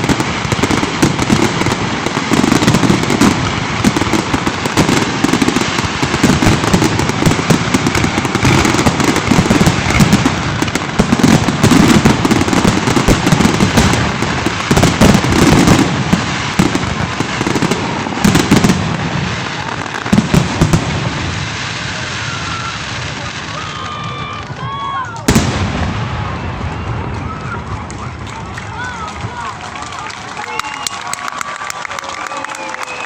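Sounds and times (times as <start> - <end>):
fireworks bangs and crackles: 0.0 - 33.0.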